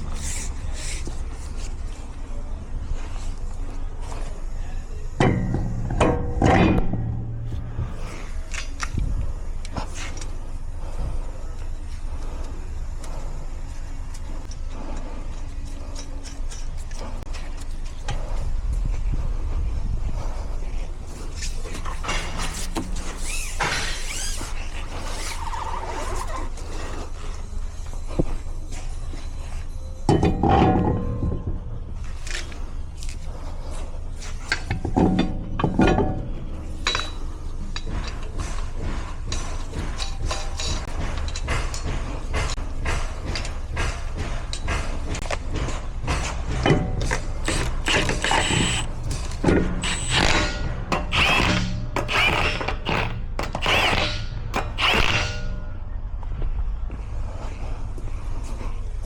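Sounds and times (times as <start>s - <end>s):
vehicle low rumble: 0.0s - 53.8s, 54.4s - 59.0s
brakes squealing: 20.7s - 30.1s, 47.1s - 56.2s.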